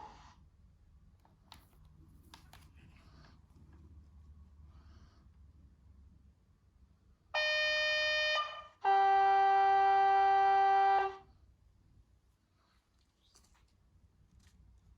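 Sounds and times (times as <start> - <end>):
model train two-tone horn: 7.3 - 11.4.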